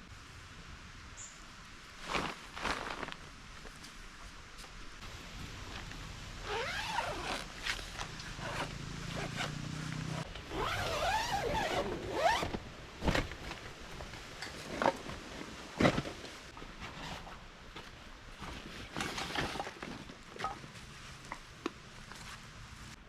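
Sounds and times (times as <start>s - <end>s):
zipper pulled: 6.4s - 13.2s.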